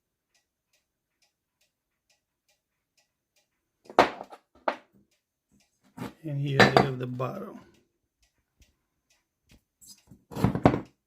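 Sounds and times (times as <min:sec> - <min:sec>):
faint ticking: 0:00.0 - 0:03.8.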